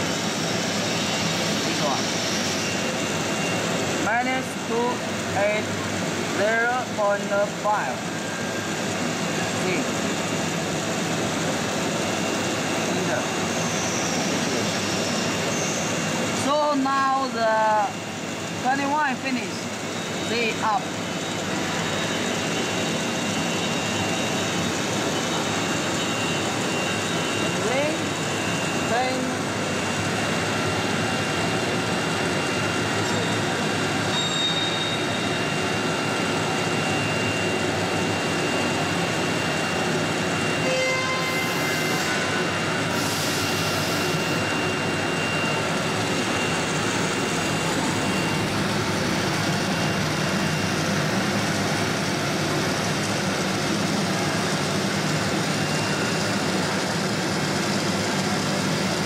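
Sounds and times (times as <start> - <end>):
faint high whine: 0.0 - 59.0
router machinery running: 0.0 - 59.0
short beeping tones: 34.0 - 35.8.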